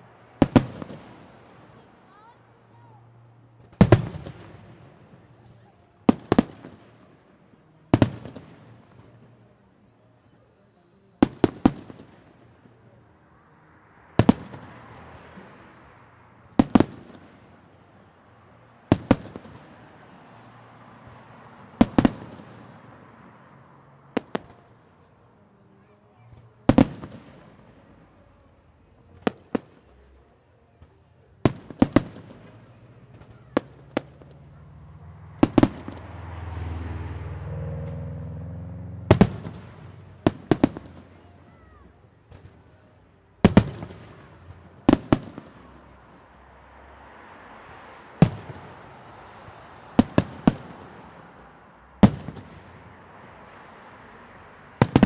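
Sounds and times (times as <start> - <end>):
fireworks bangs: 0.0 - 3.0, 3.6 - 9.4, 11.2 - 13.0, 14.2 - 25.0, 25.9 - 28.2, 30.7 - 38.2, 39.0 - 46.0, 47.6 - 53.8, 54.8 - 55.0
fireworks crackling hiss: 39.1 - 55.0.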